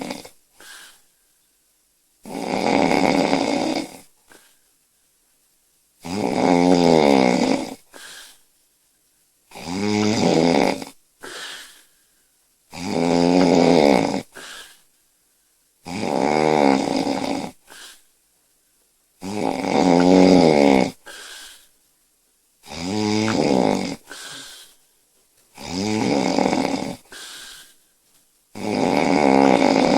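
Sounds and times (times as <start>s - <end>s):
woman snoring loudly: 0.0s - 1.0s, 2.2s - 4.4s, 6.0s - 8.3s, 9.5s - 11.8s, 12.7s - 14.8s, 15.8s - 18.0s, 19.2s - 21.6s, 22.6s - 24.7s, 25.6s - 27.7s, 28.6s - 29.9s
quiet breath sound: 0.0s - 1.5s, 3.7s - 5.1s, 7.5s - 8.6s, 9.5s - 12.5s, 14.2s - 15.7s, 17.3s - 18.7s, 19.9s - 21.8s, 23.7s - 25.6s, 26.5s - 28.1s.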